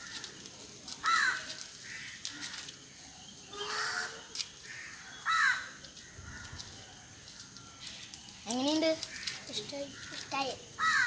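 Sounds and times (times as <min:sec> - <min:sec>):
crow cawing: 0:04.8 - 0:05.7, 0:10.0 - 0:11.0.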